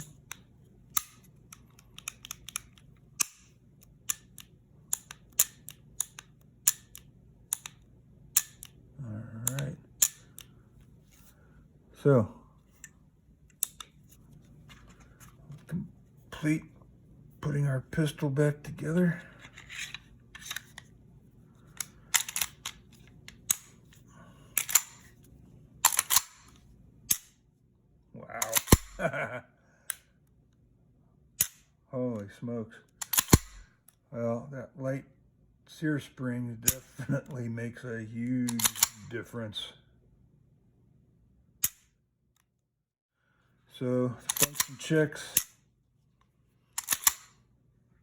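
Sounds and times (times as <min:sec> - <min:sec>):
pistol action metallic clicks: 0:00.0 - 0:07.8, 0:08.4 - 0:08.8, 0:09.4 - 0:10.5, 0:33.0 - 0:33.7, 0:38.5 - 0:39.0, 0:44.3 - 0:44.8, 0:46.8 - 0:47.4
pistol parts clicking and snapping: 0:00.0 - 0:08.8, 0:09.4 - 0:10.6, 0:12.8 - 0:15.2, 0:19.4 - 0:20.9, 0:21.6 - 0:24.0, 0:24.6 - 0:25.2, 0:25.8 - 0:27.4, 0:28.4 - 0:29.1, 0:31.4 - 0:31.8, 0:32.9 - 0:34.0, 0:38.5 - 0:39.0, 0:41.6 - 0:41.9, 0:44.2 - 0:45.6, 0:46.8 - 0:47.4.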